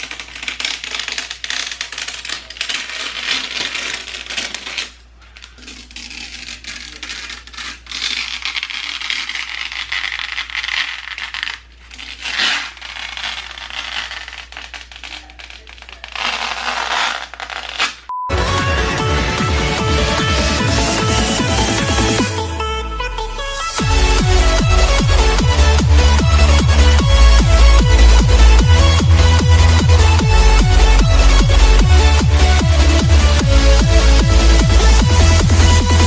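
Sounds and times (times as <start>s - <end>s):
short beep: 18.1s - 18.4s.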